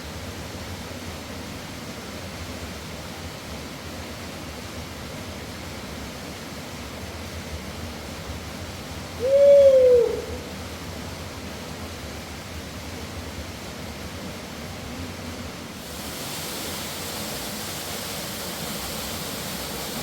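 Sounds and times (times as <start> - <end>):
mountain river rushing: 15.6 - 20.0.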